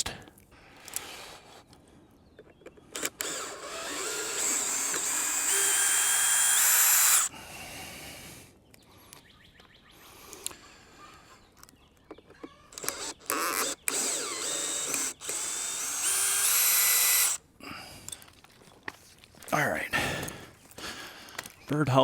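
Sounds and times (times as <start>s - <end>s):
power drill whining: 2.9s - 7.3s, 12.7s - 17.4s.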